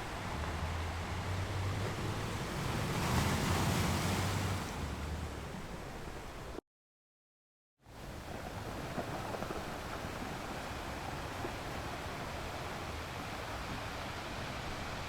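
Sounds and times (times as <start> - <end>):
waves breaking on beach: 1.9 - 5.9, 8.0 - 15.0.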